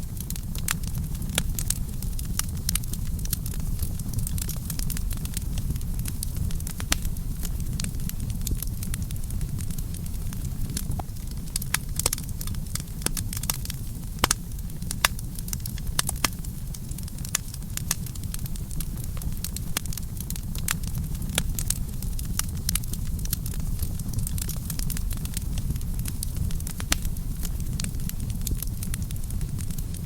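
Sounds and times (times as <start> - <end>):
campfire crackling and popping: 0.0 - 30.0
low rumble of flames: 0.0 - 30.0.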